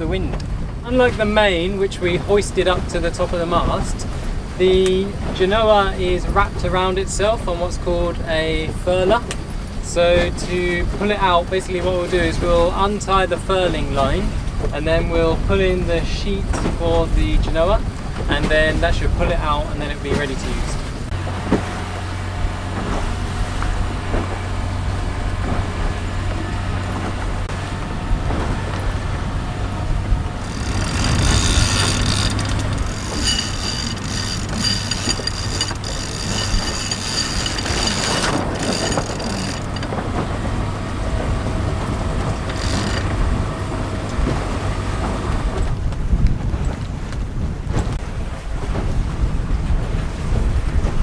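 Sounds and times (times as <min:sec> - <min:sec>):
steady low rumble: 0:14.0 - 0:51.0
mechanical clicking and rattling: 0:30.4 - 0:40.1, 0:42.3 - 0:43.2.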